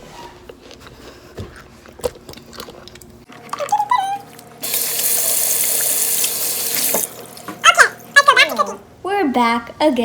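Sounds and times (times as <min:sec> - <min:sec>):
tap water running into basin: 0:04.6 - 0:07.6.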